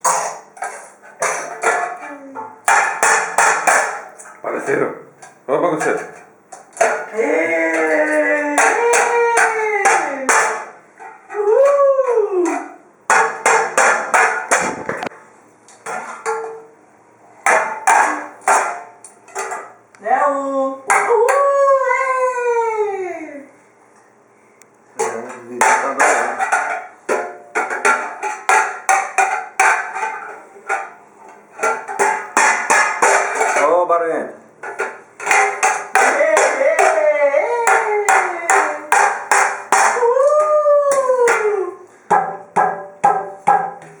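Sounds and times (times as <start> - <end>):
loud clattering knocks: 13.2 - 15.1
dog howling: 39.9 - 41.8.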